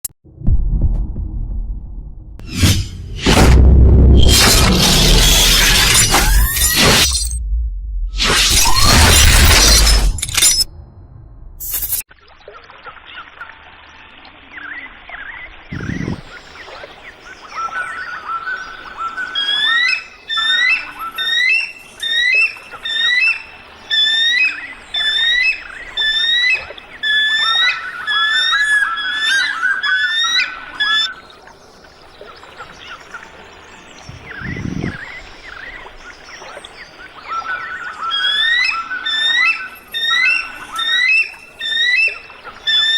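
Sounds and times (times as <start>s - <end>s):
low thud: 0.3s - 5.1s, 7.3s - 8.5s.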